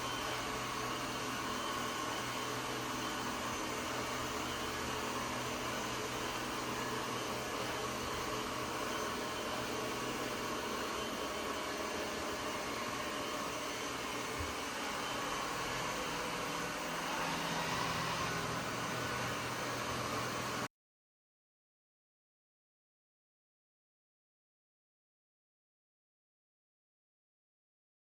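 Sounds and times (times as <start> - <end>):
robot vacuum motor hum: 0.0 - 20.7.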